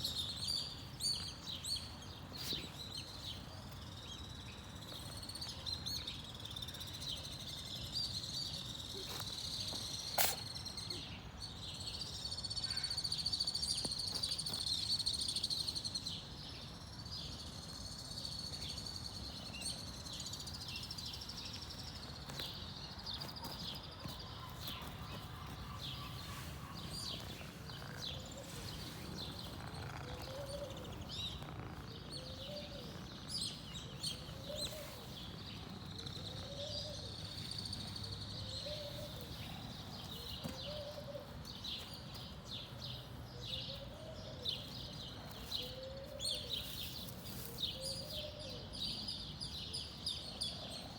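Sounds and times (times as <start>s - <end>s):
small birds chirping: 0.0s - 50.9s.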